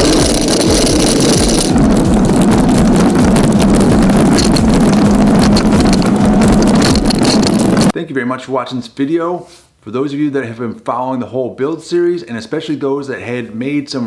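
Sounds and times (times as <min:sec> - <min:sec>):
wind buffeting microphone: 0:00.0 - 0:07.9.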